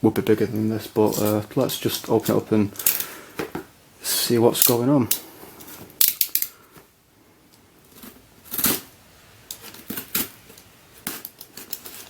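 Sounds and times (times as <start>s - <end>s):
packaging rustling and scraping: 1.0s - 3.6s, 7.8s - 12.0s.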